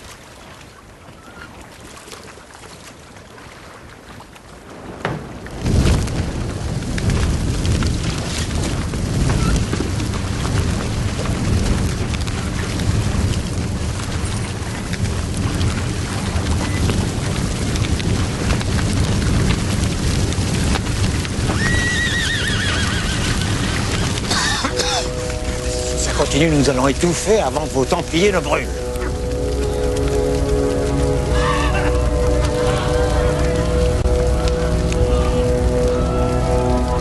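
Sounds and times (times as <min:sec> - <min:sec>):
horse whinnying: 0:21.5 - 0:24.2
dense steady din: 0:23.5 - 0:37.0.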